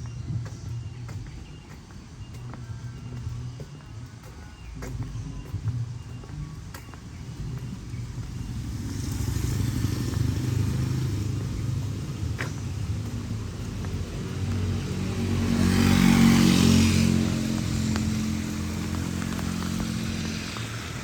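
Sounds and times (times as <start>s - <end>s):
vehicle engine passing: 5.3s - 21.0s.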